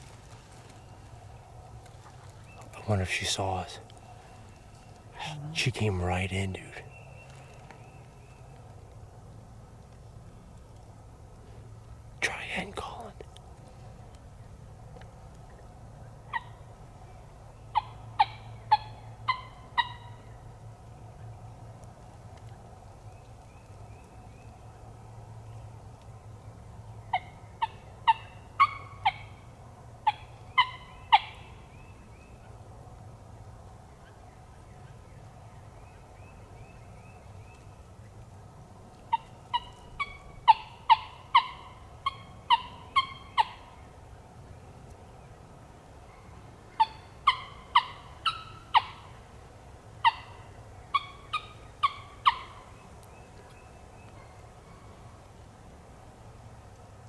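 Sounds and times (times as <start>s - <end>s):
turkey yelping: 17.7s - 20.2s, 27.1s - 29.4s, 30.0s - 31.5s, 39.1s - 43.8s, 46.8s - 49.2s, 50.0s - 52.7s.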